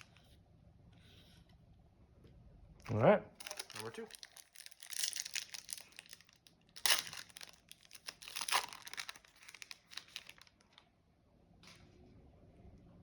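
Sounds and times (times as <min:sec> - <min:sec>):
loud foil rip: 0:03.4 - 0:10.5
foil wrapper crinkling: 0:03.4 - 0:10.9.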